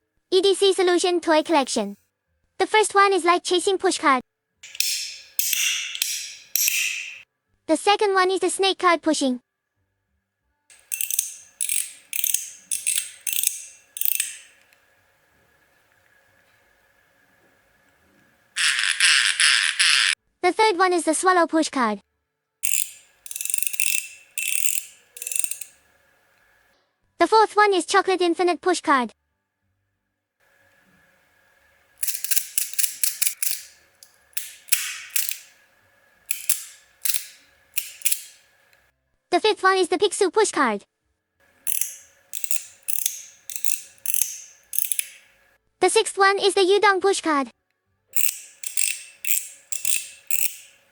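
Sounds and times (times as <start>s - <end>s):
metallic clicking slides: 1.4s - 1.9s, 4.6s - 7.2s, 10.7s - 14.8s, 22.6s - 26.4s, 32.0s - 38.8s, 41.6s - 45.5s, 48.2s - 50.9s.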